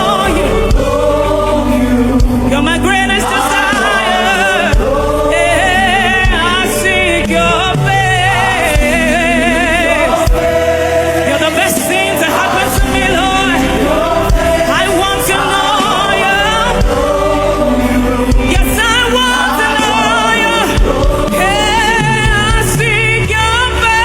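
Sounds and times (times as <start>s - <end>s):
sustained keyboard chords: 0.0s - 24.0s
voices singing with vibrato: 0.0s - 24.0s
steady low beat: 7.3s - 15.8s, 16.4s - 23.5s.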